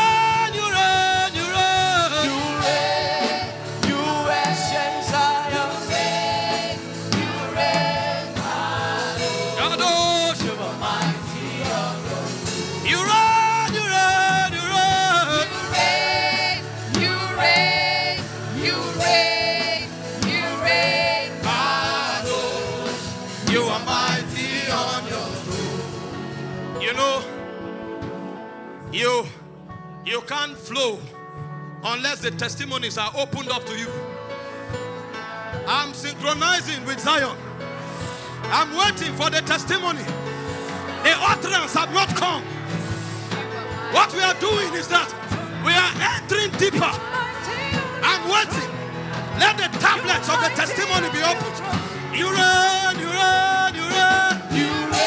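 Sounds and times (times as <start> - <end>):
instrumental backing with a beat: 0.0 - 28.8, 32.6 - 55.0
voices singing a chant: 2.2 - 13.3, 14.6 - 26.1, 52.2 - 55.0.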